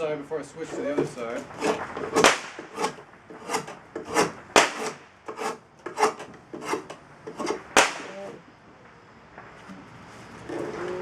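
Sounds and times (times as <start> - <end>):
drawknife scraping wood: 0.7 - 8.4.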